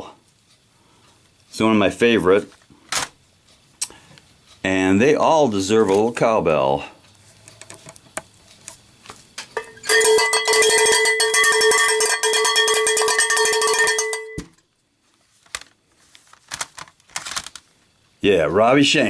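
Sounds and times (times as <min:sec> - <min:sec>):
cowbell struck rapidly: 0:09.6 - 0:14.4.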